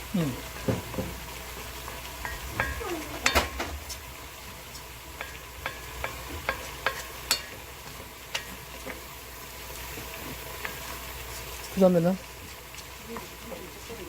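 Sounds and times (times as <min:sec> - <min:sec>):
sizzling in a pot: 0:00.0 - 0:14.0
spoon knocking and scraping pot: 0:00.5 - 0:01.3, 0:02.2 - 0:04.0, 0:05.2 - 0:09.0.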